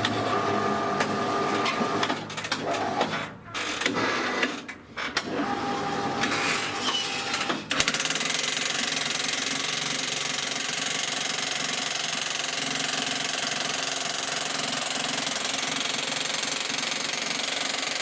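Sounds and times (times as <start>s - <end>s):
jackhammer rapid pounding: 7.7s - 18.0s.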